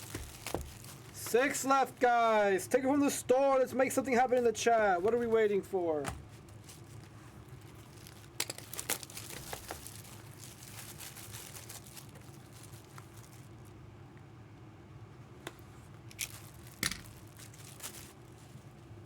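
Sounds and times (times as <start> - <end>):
packaging crinkling and crackling: 0.0 - 3.0, 6.2 - 13.8, 15.6 - 19.0.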